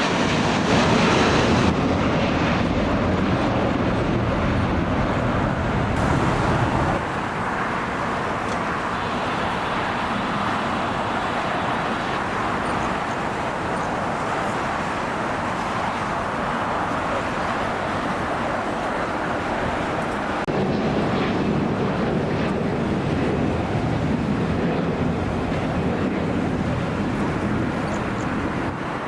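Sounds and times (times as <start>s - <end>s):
jet engines roaring: 0.0s - 29.0s.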